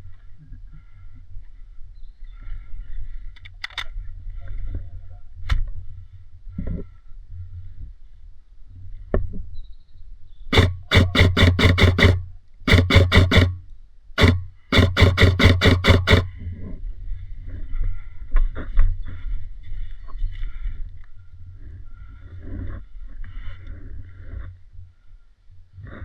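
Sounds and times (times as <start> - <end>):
airsoft gun firing: 10.5 - 13.6, 14.2 - 16.3.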